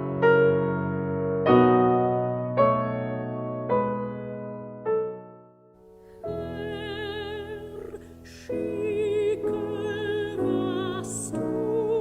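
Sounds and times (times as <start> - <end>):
soprano singing with vibrato: 6.1 - 12.0.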